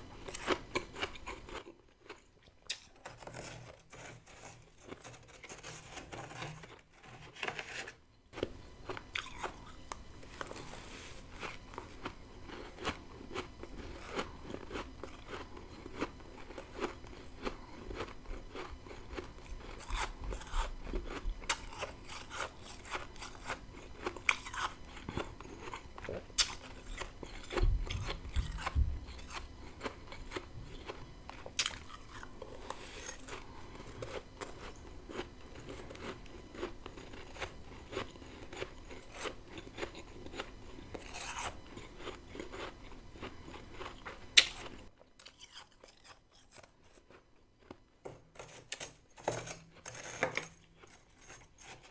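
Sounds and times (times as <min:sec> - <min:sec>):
crunchy ice chewing: 0:00.2 - 0:07.4, 0:08.3 - 0:51.9.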